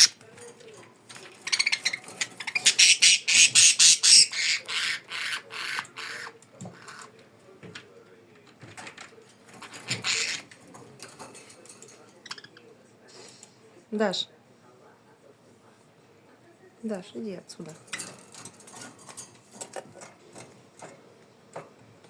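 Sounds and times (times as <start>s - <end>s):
budgerigar rasping chirps: 2.6s - 6.3s.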